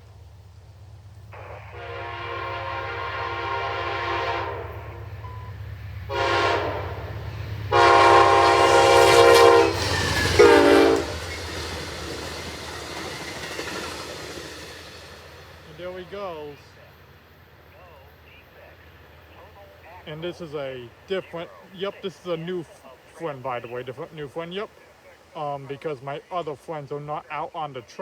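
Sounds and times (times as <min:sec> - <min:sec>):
train rumble and wheel clatter: 0:00.0 - 0:27.9
locomotive multi-chime air horn: 0:01.4 - 0:07.1, 0:07.7 - 0:11.3.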